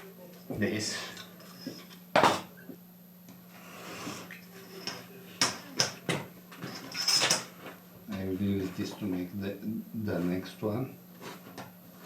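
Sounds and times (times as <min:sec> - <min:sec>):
knock on workbench: 0:02.2 - 0:02.5.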